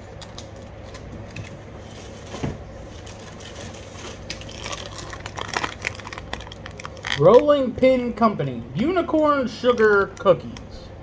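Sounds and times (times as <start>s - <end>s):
plastic packaging crinkling: 0.0s - 7.7s.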